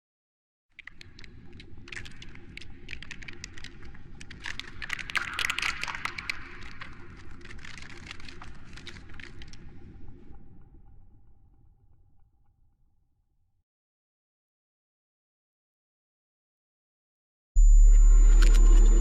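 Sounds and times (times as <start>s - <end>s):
dense crackling and clicking: 0.8s - 10.4s
faint high hum: 17.6s - 19.0s
low rumble: 17.6s - 19.0s.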